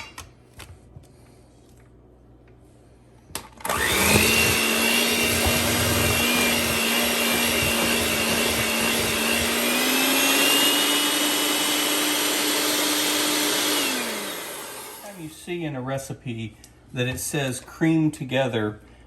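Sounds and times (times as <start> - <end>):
electric mixer running: 3.6 - 15.2
beaters knocking in thick mixture: 3.8 - 12.1.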